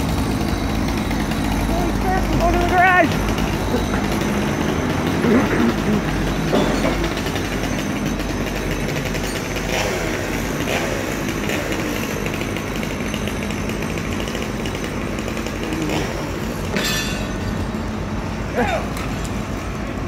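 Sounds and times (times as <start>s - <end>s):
engine running steadily: 0.0s - 20.0s.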